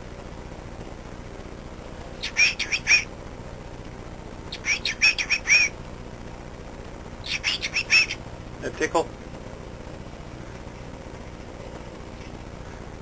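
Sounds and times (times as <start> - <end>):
cockatiel chirping: 2.2 - 3.1, 4.5 - 5.7, 7.3 - 8.2.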